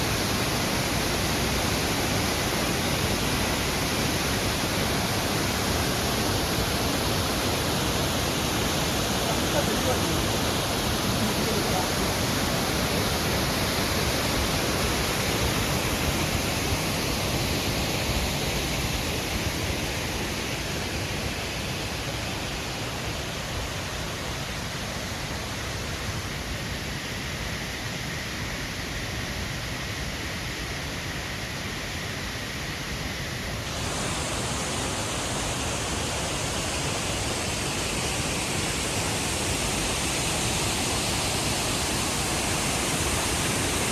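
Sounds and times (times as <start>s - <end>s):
waterfall rushing: 0.0s - 16.9s, 33.7s - 43.9s.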